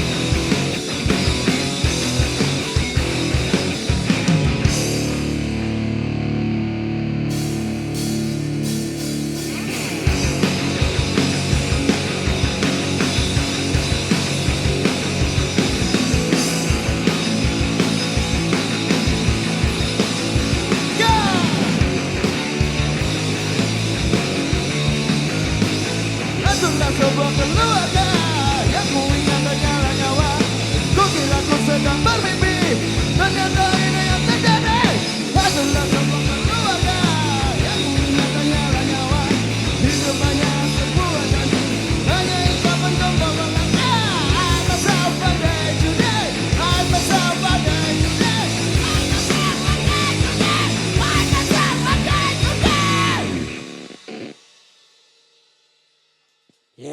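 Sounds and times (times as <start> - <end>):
rock band playing punk rock: 0.0 - 54.4
pounding drums: 8.2 - 53.6
person shouting and singing: 20.8 - 21.9, 26.4 - 53.5.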